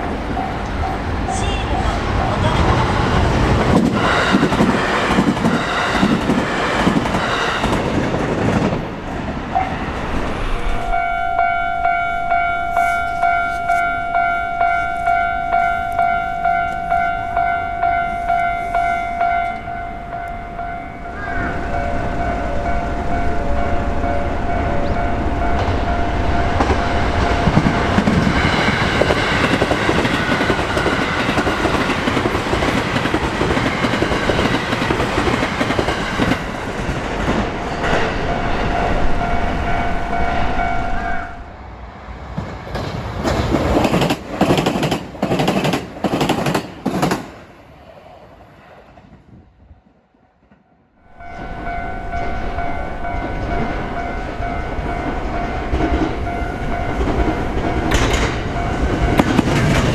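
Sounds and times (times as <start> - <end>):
railroad crossing bell ringing: 0.0 - 2.7, 10.7 - 36.6, 37.4 - 41.6, 50.9 - 59.9
train wheels rumbling on rail: 0.0 - 59.9
wheel clacks over rail joints: 55.1 - 59.9.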